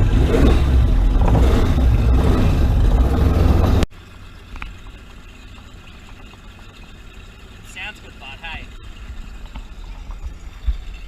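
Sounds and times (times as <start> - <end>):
powerboat engine running: 0.0 - 11.0.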